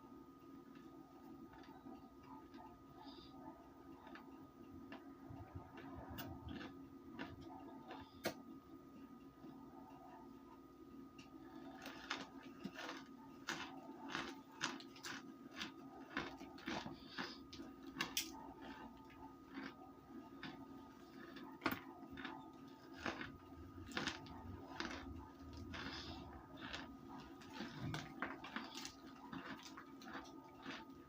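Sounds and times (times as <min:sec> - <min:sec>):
low hum: 0:00.0 - 0:31.0
person crunching food: 0:05.6 - 0:08.4, 0:11.5 - 0:31.0.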